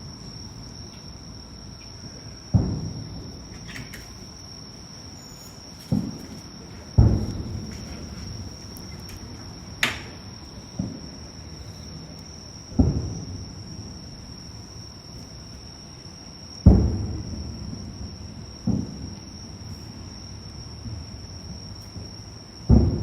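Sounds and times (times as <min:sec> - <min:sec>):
distant fireworks booms: 0:00.0 - 0:14.8, 0:16.6 - 0:23.0
crickets chirring: 0:00.0 - 0:23.0
sharp crack: 0:08.7 - 0:10.2.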